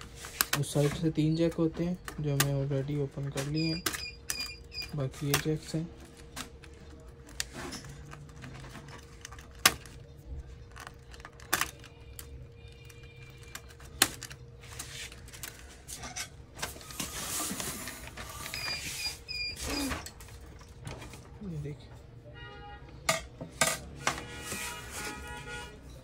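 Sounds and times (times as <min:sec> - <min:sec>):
plastic and metal parts clicking: 0:03.3 - 0:14.5.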